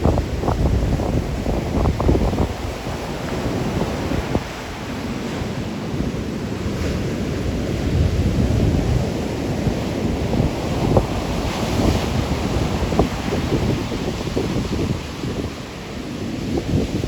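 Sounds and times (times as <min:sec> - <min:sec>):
surf breaking on rocky beach: 0:00.0 - 0:17.0
wind buffeting microphone: 0:00.0 - 0:17.0.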